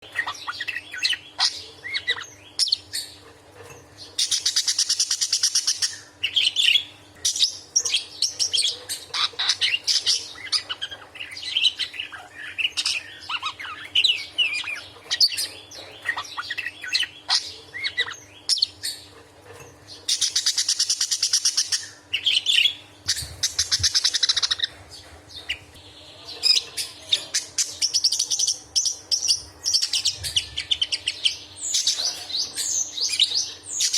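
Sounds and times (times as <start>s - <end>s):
budgerigar chattering: 20.1s - 24.7s.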